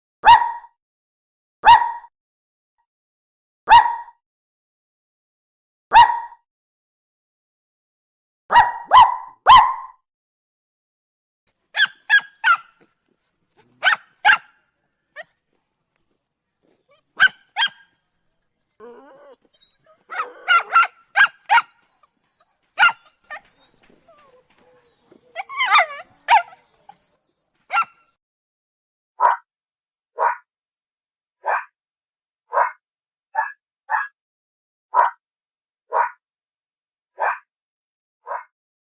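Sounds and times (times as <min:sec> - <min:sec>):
puppies yipping: 0:11.8 - 0:13.0, 0:13.6 - 0:14.6, 0:16.7 - 0:18.0, 0:18.8 - 0:28.0.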